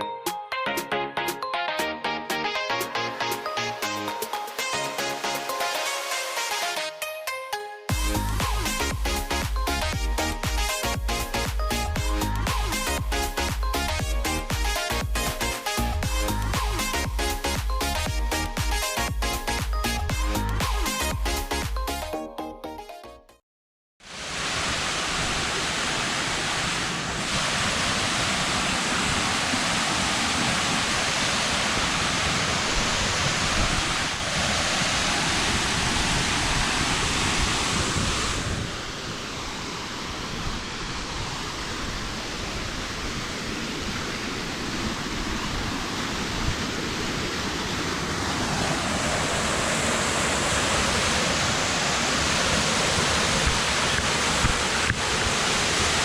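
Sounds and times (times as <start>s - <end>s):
waterfall rushing: 24.0s - 56.0s.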